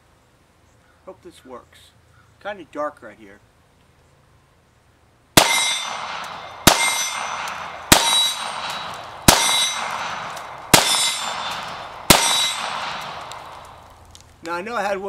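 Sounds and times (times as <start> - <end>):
pistol shots: 5.4 - 14.0
steel target ringing: 5.4 - 14.0.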